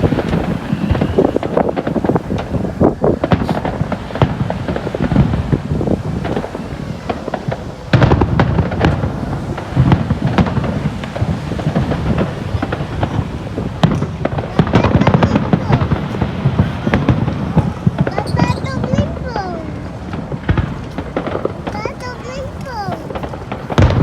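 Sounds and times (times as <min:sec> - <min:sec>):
fireworks bangs and crackling: 0:00.0 - 0:24.0.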